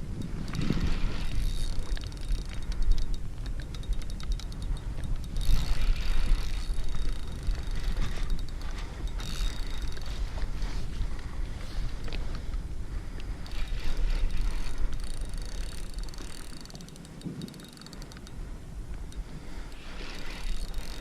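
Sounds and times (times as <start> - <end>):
wind on microphone: 0.0 - 21.0
fishing reel clicking: 0.1 - 10.5, 13.2 - 21.0.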